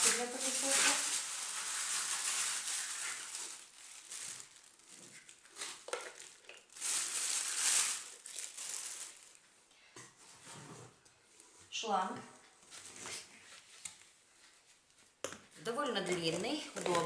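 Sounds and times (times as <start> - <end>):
plastic packaging crinkling: 0.0 - 9.5, 16.1 - 17.0.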